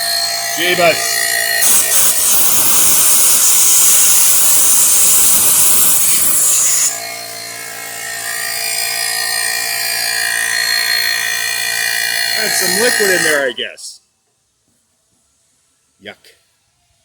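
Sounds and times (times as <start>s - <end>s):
air duster hissing blast: 0.0s - 8.8s, 10.1s - 13.5s
steady whir with tones: 0.0s - 13.6s.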